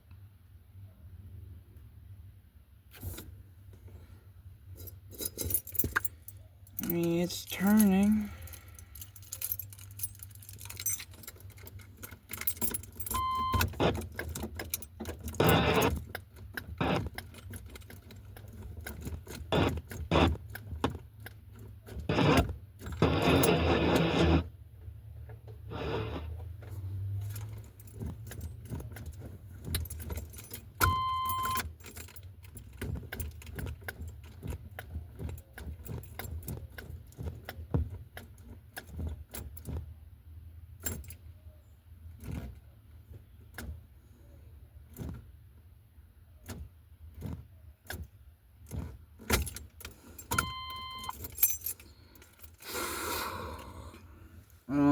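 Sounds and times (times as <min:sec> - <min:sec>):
keys jangling and clicking: 0:04.8 - 0:23.6, 0:27.2 - 0:39.8, 0:40.8 - 0:41.3, 0:46.4 - 0:52.7
short electronic beep: 0:13.1 - 0:13.7, 0:30.8 - 0:31.6, 0:50.4 - 0:51.1.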